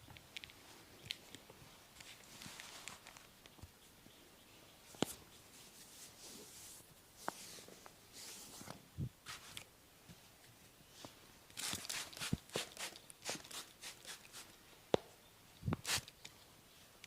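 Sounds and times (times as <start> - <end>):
palm strokes on skin: 5.0 - 8.6.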